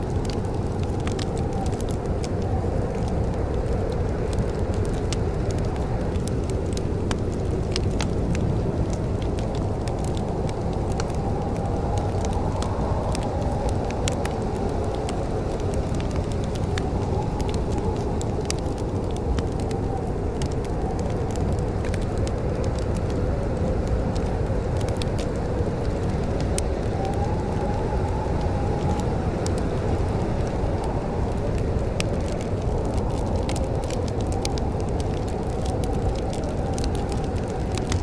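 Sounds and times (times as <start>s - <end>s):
low fire rumble: 0.0s - 38.0s
wood fire crackling and popping: 0.0s - 38.0s.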